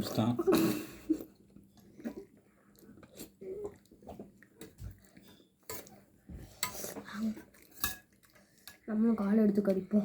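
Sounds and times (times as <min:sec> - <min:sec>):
spoons and bowls clinking: 0:06.6 - 0:08.8.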